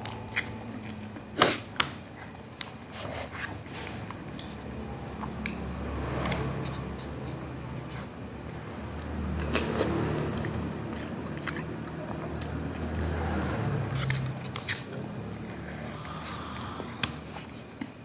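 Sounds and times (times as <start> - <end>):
chewing noodles: 0.0 - 3.1, 4.1 - 18.0
wet mouth clicks: 9.0 - 18.0.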